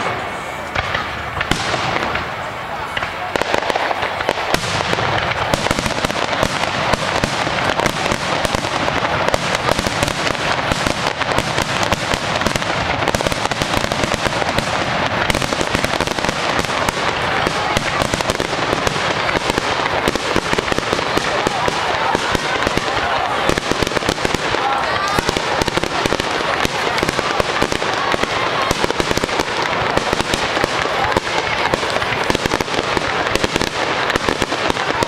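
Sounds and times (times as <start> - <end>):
fireworks crackling: 0.0 - 35.0.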